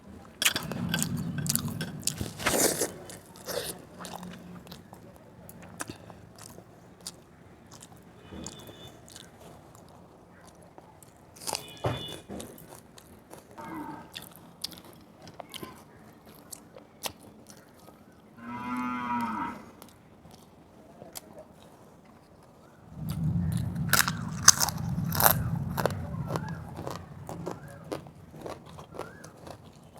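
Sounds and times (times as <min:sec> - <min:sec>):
person chewing with wet clicks: 0:00.4 - 0:11.8, 0:12.4 - 0:18.1, 0:23.0 - 0:29.9
pitched hum: 0:22.9 - 0:28.9.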